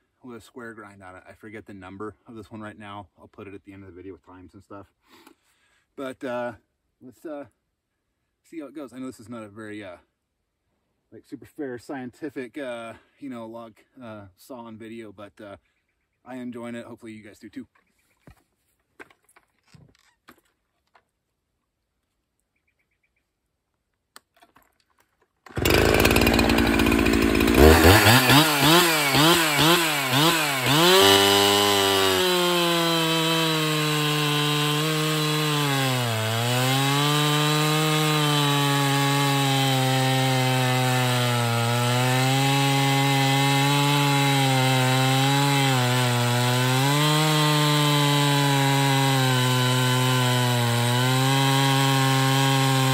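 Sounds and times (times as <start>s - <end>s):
chainsaw revving and cutting: 25.5s - 52.9s.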